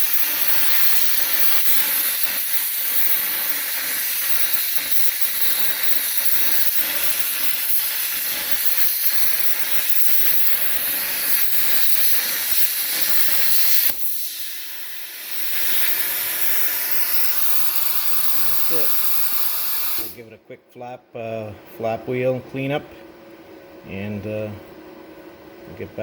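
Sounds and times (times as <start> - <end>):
plasma cutter arc hissing: 0.0 - 20.2
sharp pop: 13.8 - 14.3.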